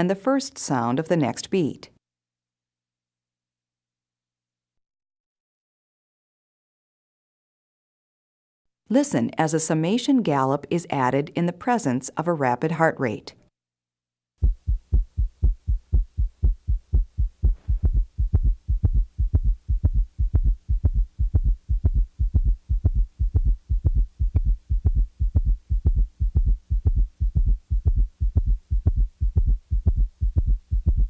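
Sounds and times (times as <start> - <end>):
fast galloping heartbeat: 14.4 - 31.0.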